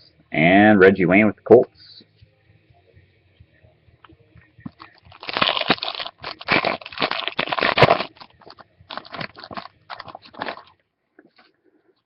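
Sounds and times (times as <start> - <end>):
foil wrapper tearing and crinkling: 4.7 - 10.8
cards being handled: 4.7 - 11.5.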